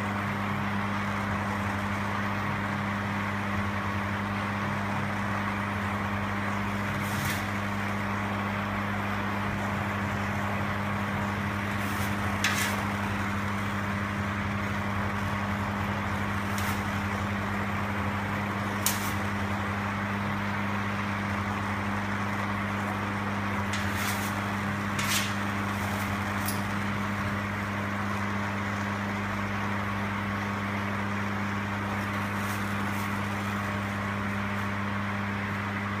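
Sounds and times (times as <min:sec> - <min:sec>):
steady hum: 0:00.0 - 0:36.0.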